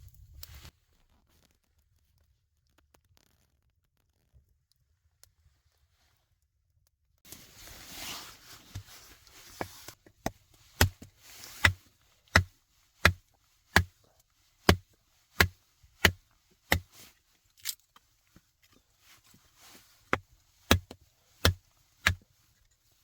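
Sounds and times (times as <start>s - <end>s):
rustling: 7.3s - 23.0s
sharp chopping strikes: 10.2s - 13.9s, 14.6s - 14.8s, 15.4s - 17.0s, 20.1s - 22.2s.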